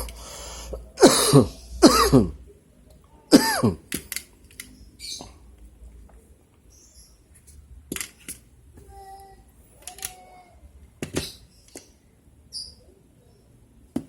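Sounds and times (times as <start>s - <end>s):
person coughing: 1.0s - 2.4s, 3.3s - 3.8s.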